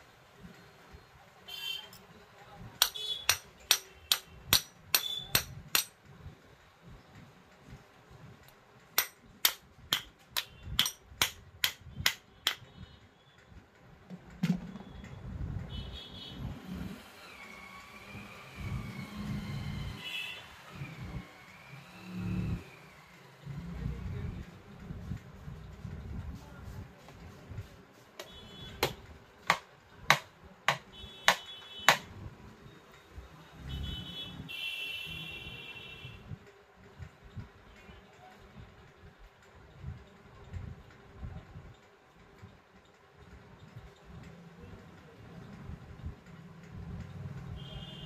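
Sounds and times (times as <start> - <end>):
sharp metallic taps: 2.8 - 6.0, 9.0 - 12.7, 28.2 - 32.1.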